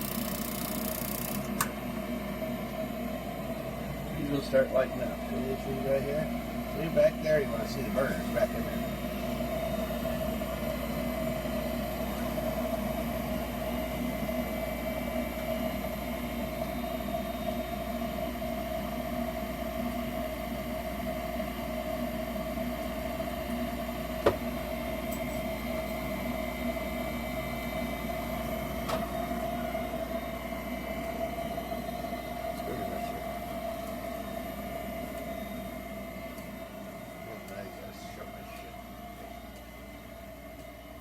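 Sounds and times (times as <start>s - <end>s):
gas furnace hum and rush: 0.0s - 41.0s.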